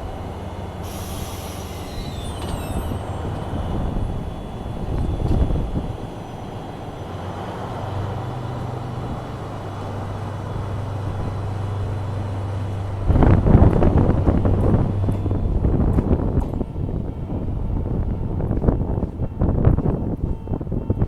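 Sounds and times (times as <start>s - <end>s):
locomotive motor humming: 0.0s - 21.0s
loud rough rumble: 0.0s - 21.0s.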